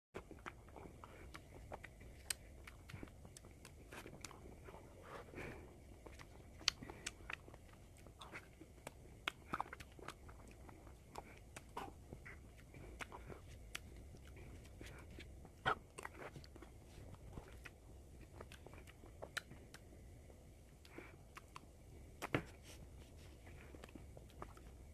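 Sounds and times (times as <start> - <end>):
person chewing ice cream: 0.2 - 24.9
wet mouth clicks: 18.4 - 19.9.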